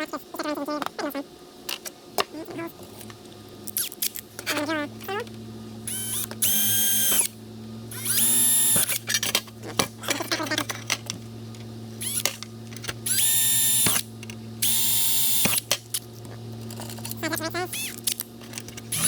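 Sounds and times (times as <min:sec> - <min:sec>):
power drill whining: 0:03.7 - 0:09.1, 0:12.0 - 0:12.4, 0:13.0 - 0:15.6, 0:17.7 - 0:18.2.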